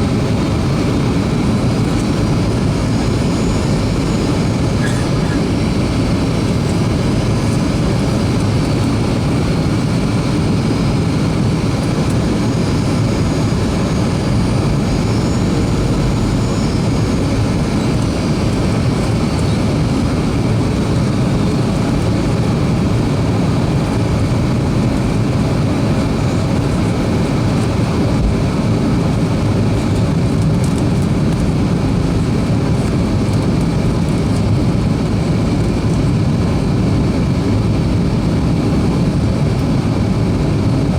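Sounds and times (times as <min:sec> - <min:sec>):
faint high whine: 0:00.0 - 0:09.6, 0:11.9 - 0:21.6
airplane cabin engine and airflow: 0:00.0 - 0:40.9.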